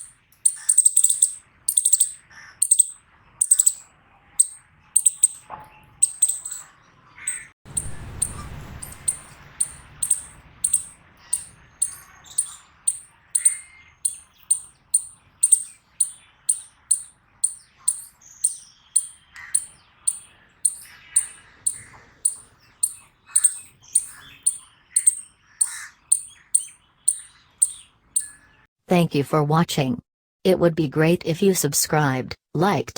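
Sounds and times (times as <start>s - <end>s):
chipmunk chip calls: 0.0s - 3.8s, 4.4s - 5.4s, 6.0s - 6.6s, 7.2s - 28.4s
low rumbling noise: 7.7s - 13.4s.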